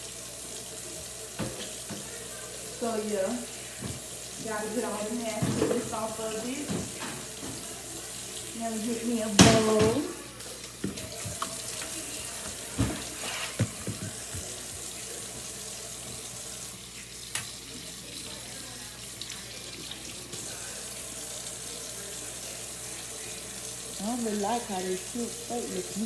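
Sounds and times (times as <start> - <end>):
tap running into sink: 0.9 - 2.4, 3.4 - 8.5, 9.3 - 16.6, 17.2 - 17.6.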